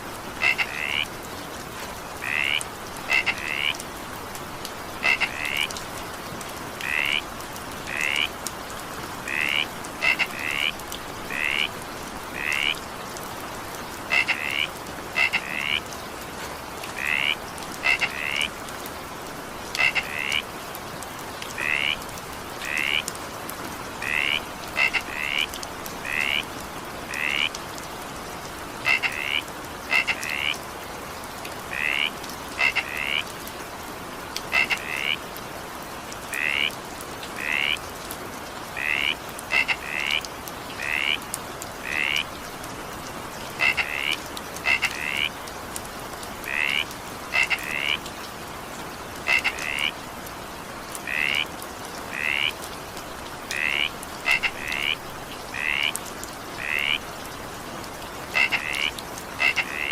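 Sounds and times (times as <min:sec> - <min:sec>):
rain falling: 0:00.0 - 0:59.9
frogs croaking: 0:00.2 - 0:16.0, 0:16.7 - 0:18.8, 0:19.7 - 0:20.5, 0:21.3 - 0:30.8, 0:31.4 - 0:33.5, 0:34.4 - 0:45.6, 0:46.2 - 0:48.1, 0:49.2 - 0:50.2, 0:50.8 - 0:59.9.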